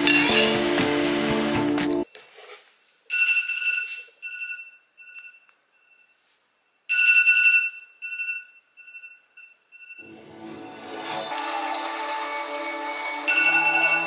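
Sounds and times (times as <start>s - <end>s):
high electronic ringing tone: 0.0s - 0.8s, 6.9s - 10.1s.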